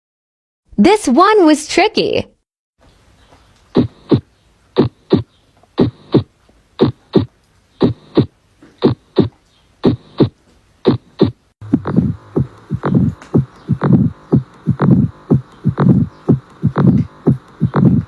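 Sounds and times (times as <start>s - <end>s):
heartbeat lub-dub: 3.8s - 18.0s.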